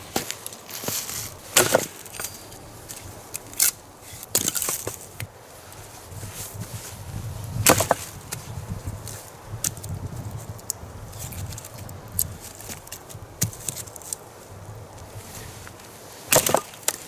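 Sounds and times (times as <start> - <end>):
firewood cracking: 0.1 - 5.3, 9.6 - 14.2, 14.9 - 17.0.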